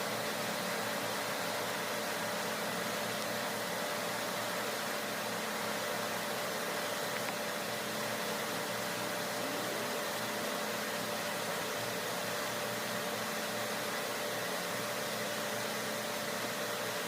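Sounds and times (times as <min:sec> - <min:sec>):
machine hum with high note: 0:05.9 - 0:17.0.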